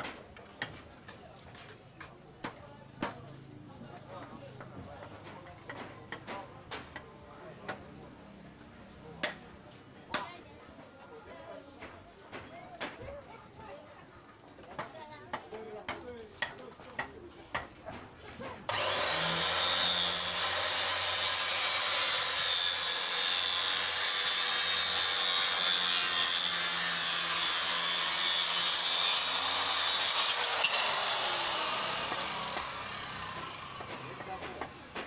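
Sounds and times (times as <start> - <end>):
circular saw cutting wood: 18.7 - 35.0.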